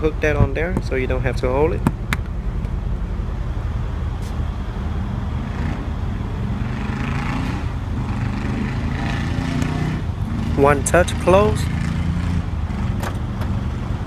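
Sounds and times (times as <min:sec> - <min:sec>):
car engine idling: 0:00.0 - 0:06.7.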